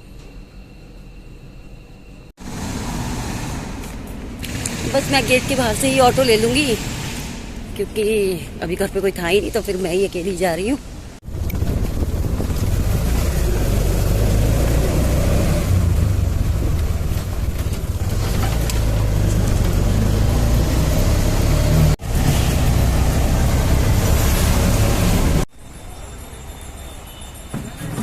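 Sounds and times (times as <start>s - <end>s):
road rumble: 2.3s - 28.0s
auto-rickshaw engine running: 2.4s - 7.6s, 11.2s - 28.0s
wind buffeting microphone: 3.1s - 21.0s.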